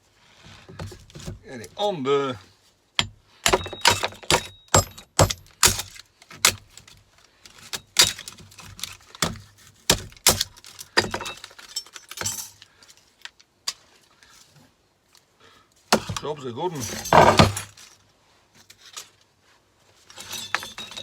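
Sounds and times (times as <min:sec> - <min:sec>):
metal parts clattering: 0:03.4 - 0:05.8, 0:10.6 - 0:12.7, 0:16.1 - 0:17.9, 0:20.1 - 0:21.0.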